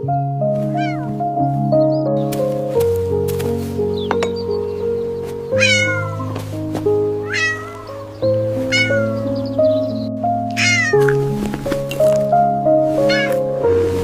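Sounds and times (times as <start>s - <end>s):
background music sustained notes: 0.0s - 14.0s
kitten meowing: 0.7s - 1.2s, 5.6s - 6.4s, 7.2s - 9.4s, 10.5s - 11.2s, 13.1s - 13.4s.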